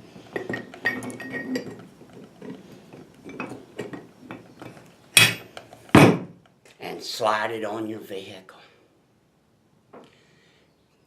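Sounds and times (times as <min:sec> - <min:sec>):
metal parts clicking and clinking: 0:00.4 - 0:01.8.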